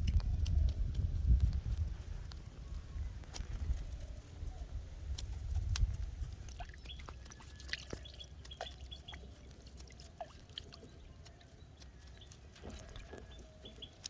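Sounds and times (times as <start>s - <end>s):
low rumble: 0.0s - 1.7s
high bird chirps: 6.7s - 9.4s.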